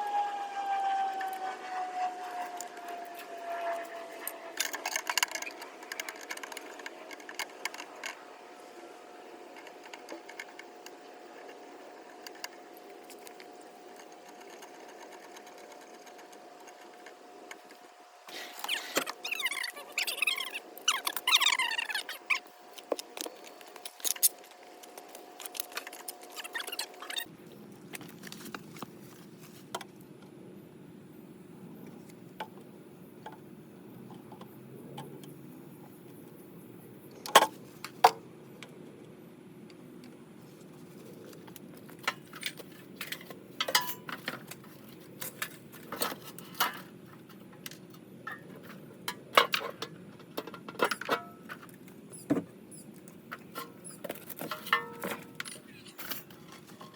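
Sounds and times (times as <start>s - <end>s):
low hum: 0.0s - 7.2s.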